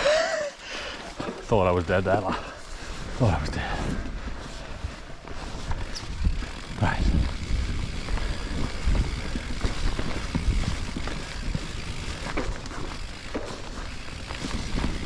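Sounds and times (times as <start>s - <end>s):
tyres rumbling on rough trail: 0.0s - 15.0s
bike knocks and rattles: 1.0s - 15.0s
wind on microphone: 5.6s - 12.4s.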